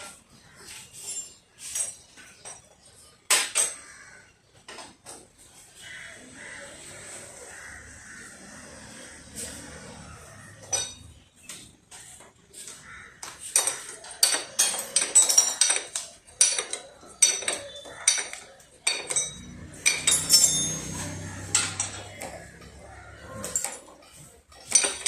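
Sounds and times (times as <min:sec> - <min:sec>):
metal tools clinking and clanking: 0:00.0 - 0:03.9, 0:10.6 - 0:11.6, 0:13.4 - 0:25.0.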